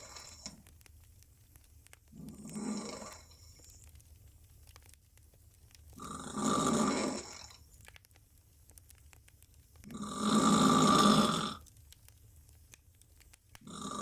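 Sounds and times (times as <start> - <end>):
woman snoring loudly: 2.4 - 3.2, 6.0 - 7.5, 9.9 - 11.6, 13.7 - 14.0.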